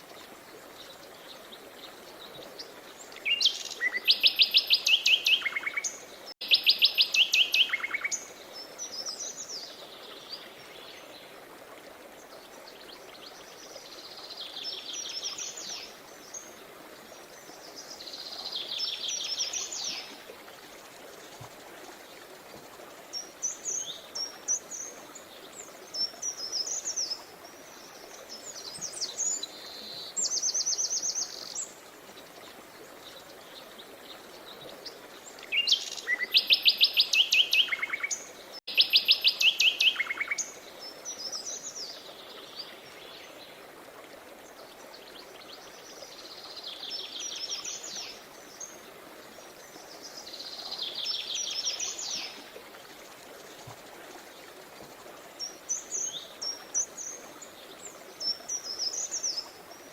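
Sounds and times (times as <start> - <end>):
songbirds singing: 0.7 - 11.4, 23.1 - 43.6, 44.4 - 59.9.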